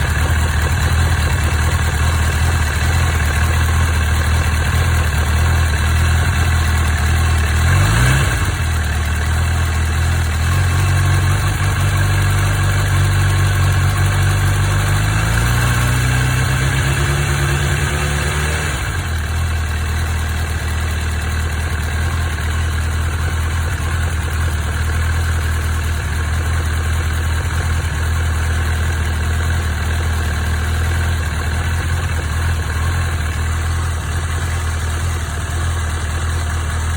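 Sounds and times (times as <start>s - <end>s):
engine ticking noise: 0.0s - 16.4s, 18.7s - 36.9s
motorcycle engine idling and revving: 0.0s - 36.9s.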